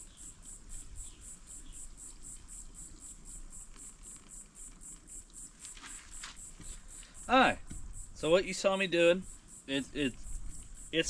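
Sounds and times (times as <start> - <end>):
insects chirping: 0.0 - 11.0.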